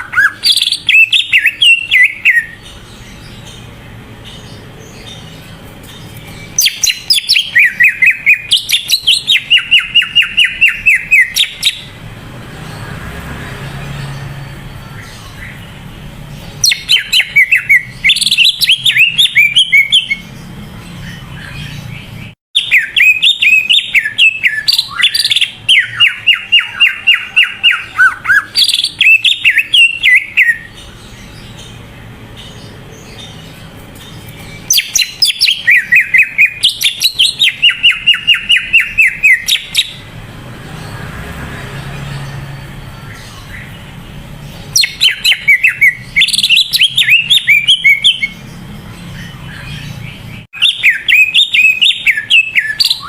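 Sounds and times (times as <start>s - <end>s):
bird singing whistled notes: 0.0s - 3.7s, 6.0s - 12.0s, 16.5s - 20.4s, 21.0s - 31.8s, 34.1s - 40.1s, 44.6s - 48.5s, 49.1s - 53.0s.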